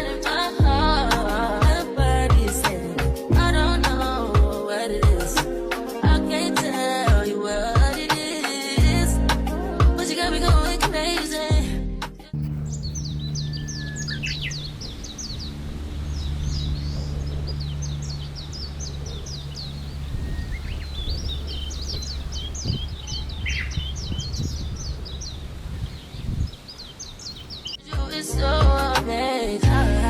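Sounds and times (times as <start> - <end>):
steady low hum: 12.4 - 26.5
small birds chirping: 12.4 - 27.8.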